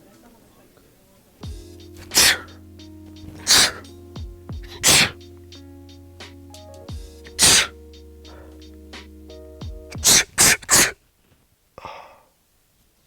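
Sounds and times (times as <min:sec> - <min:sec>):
music with deep bass beat: 0:01.4 - 0:10.1
man sneezing loudly: 0:02.0 - 0:02.6, 0:03.3 - 0:03.9, 0:04.6 - 0:05.2, 0:07.4 - 0:08.4, 0:10.0 - 0:11.0.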